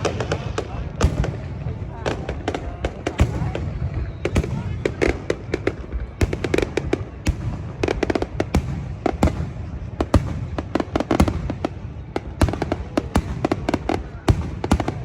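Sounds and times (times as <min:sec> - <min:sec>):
fireworks bangs and pops: 0:00.0 - 0:15.0.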